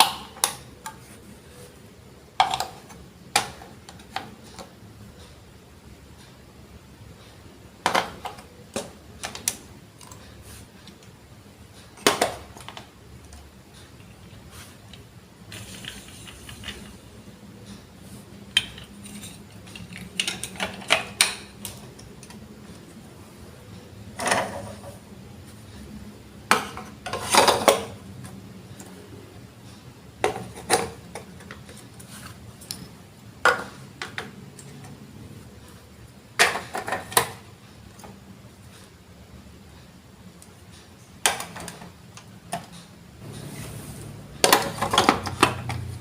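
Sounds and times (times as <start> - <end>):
plastic bricks clicking and clattering: 18.5 - 21.5.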